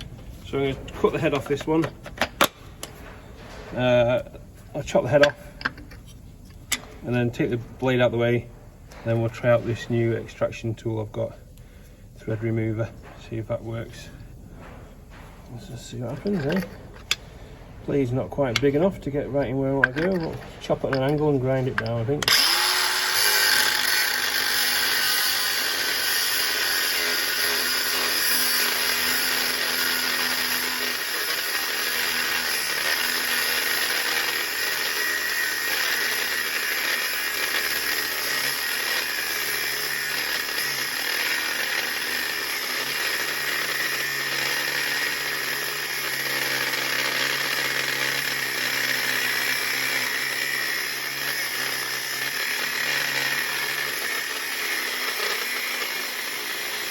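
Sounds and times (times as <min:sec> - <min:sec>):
angle grinder cutting metal: 0:15.8 - 0:17.2, 0:17.9 - 0:56.9.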